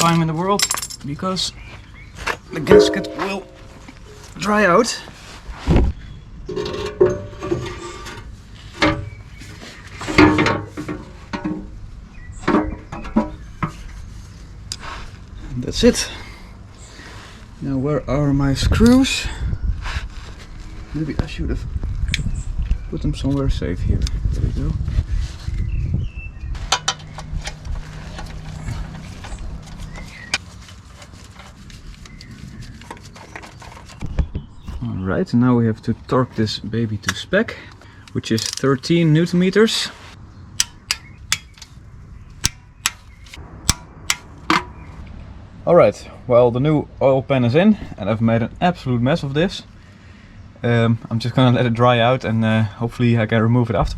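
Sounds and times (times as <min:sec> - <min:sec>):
oil pan knocking and scraping: 0:02.5 - 0:04.4, 0:06.4 - 0:09.2, 0:10.0 - 0:11.8, 0:12.4 - 0:14.0, 0:44.0 - 0:44.9.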